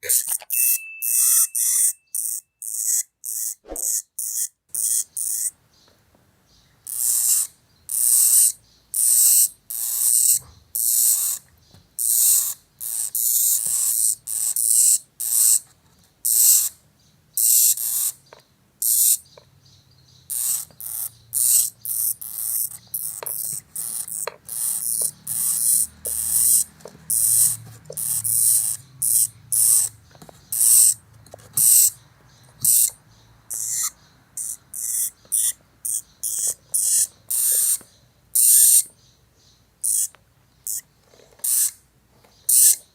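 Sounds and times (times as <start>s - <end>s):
hamster hissing: 3.6s - 4.0s.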